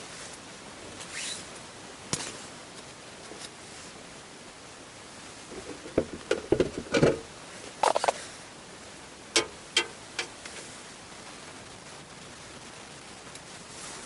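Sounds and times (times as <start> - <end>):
irregular knocks and clicks: 5.6 - 7.2, 9.4 - 10.3.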